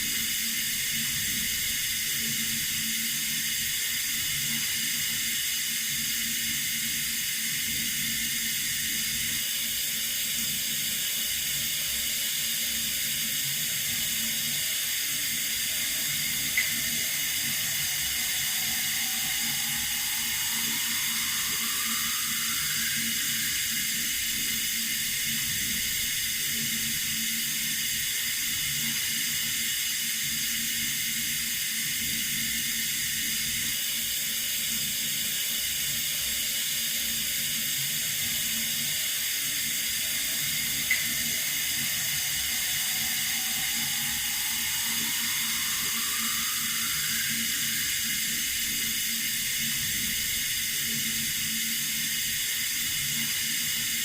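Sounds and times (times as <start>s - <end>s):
water running from a tap: 0.0s - 33.7s, 37.4s - 54.0s
faint rising tone: 14.5s - 25.9s, 38.8s - 50.4s.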